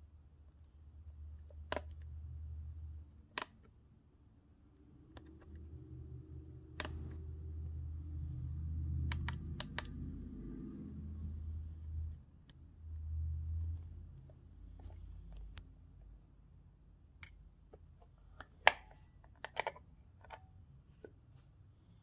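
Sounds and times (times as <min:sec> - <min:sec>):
low hum: 0:04.7 - 0:17.6.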